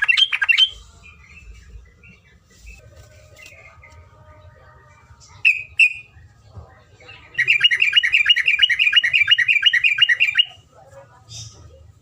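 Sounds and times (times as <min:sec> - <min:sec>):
bird singing rapid trill: 0:05.4 - 0:06.1, 0:07.1 - 0:10.6.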